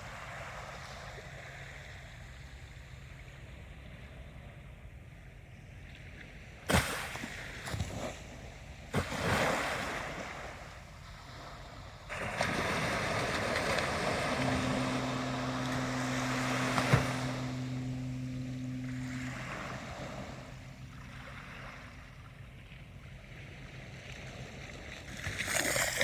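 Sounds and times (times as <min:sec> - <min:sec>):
ocean waves crashing: 0:12.2 - 0:21.8
steady low hum: 0:12.4 - 0:23.9.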